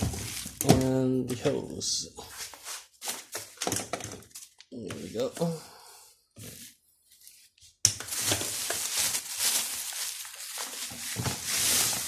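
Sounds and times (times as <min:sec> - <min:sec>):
packaging rustling and crinkling: 0:00.0 - 0:00.9, 0:07.2 - 0:12.0.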